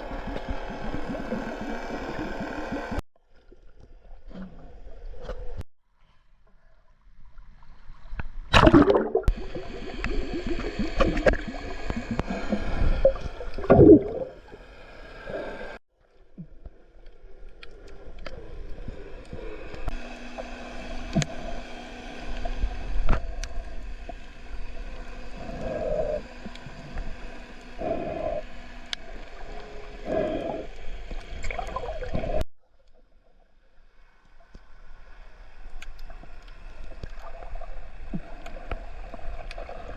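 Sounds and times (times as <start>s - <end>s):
muffled underwater gurgling water: 22.4s - 32.4s.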